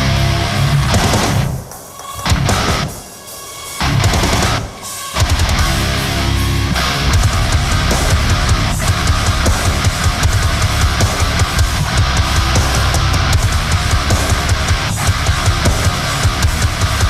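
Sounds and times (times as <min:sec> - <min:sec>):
heavy metal rock music: 0:00.0 - 0:17.0.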